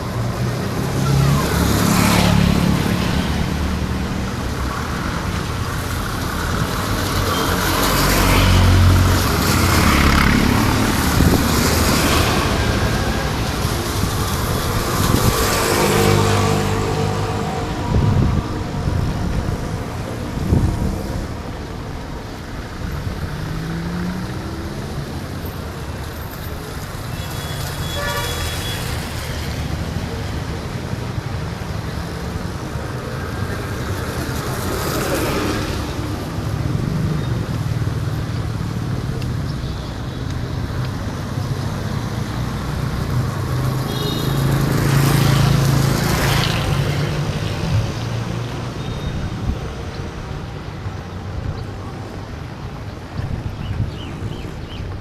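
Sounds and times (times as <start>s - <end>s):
road noise: 0.0s - 55.0s
vehicles passing: 0.0s - 55.0s
car horns honking: 27.4s - 28.8s.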